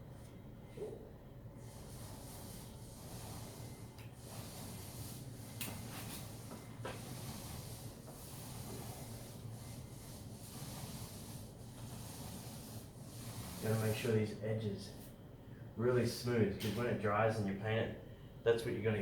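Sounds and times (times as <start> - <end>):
fingertip rubbing caulked joint: 1.7 - 13.9.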